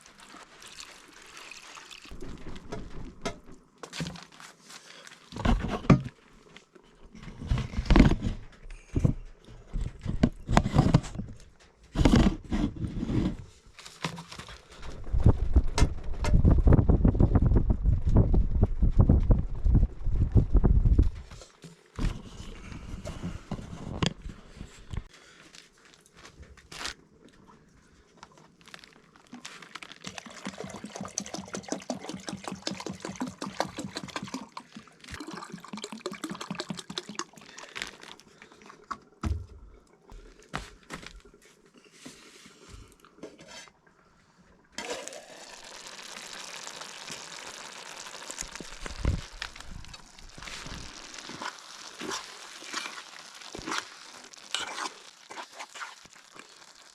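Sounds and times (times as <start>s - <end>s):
liquid sloshing and pouring: 0.0s - 3.4s, 28.4s - 41.2s, 43.2s - 56.9s.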